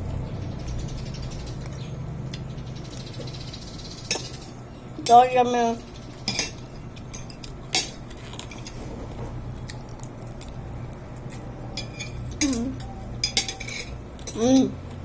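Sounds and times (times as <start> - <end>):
cutlery clinking against dishes: 4.1 - 5.4, 6.2 - 9.0, 11.3 - 14.8.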